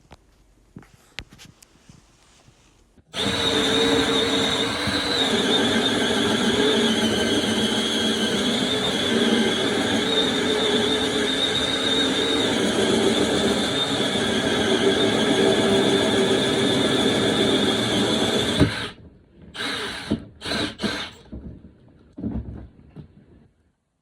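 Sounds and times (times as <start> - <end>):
machine motor whining: 3.2 - 19.0, 19.6 - 21.2.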